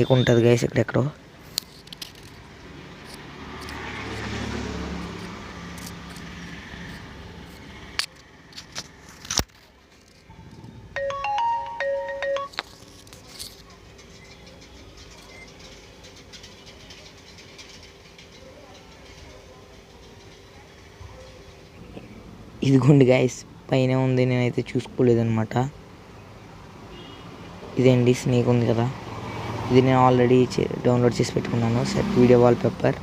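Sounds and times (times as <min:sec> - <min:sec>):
electronic chime melody: 0:11.0 - 0:12.6.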